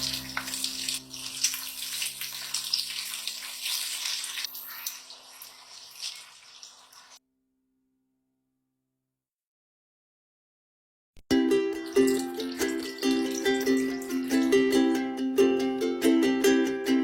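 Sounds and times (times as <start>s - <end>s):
steady watery hiss: 0.0s - 7.2s.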